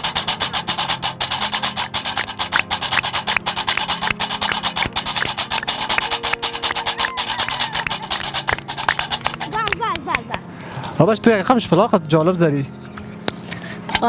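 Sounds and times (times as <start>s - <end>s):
fast percussive clicking rhythm: 0.0s - 10.4s.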